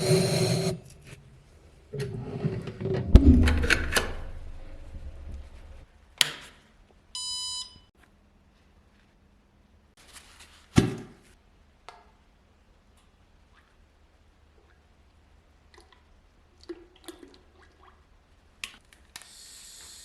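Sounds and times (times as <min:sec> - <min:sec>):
sharp knock: 0:03.1 - 0:05.7.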